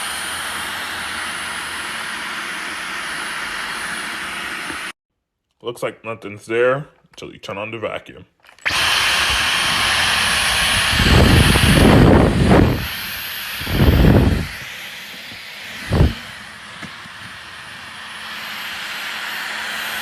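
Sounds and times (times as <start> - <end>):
vacuum cleaner whirring: 0.0 - 5.0, 8.5 - 20.0.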